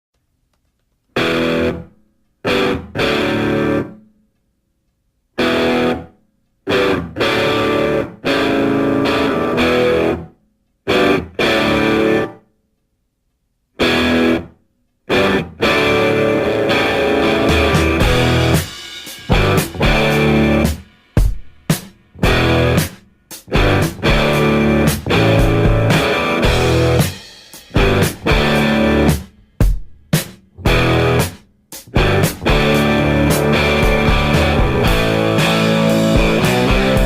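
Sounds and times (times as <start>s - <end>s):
electric guitar music: 1.2s - 4.0s, 5.4s - 6.1s, 6.7s - 10.3s, 10.9s - 12.4s, 13.8s - 20.9s, 22.1s - 29.4s, 30.6s - 37.0s.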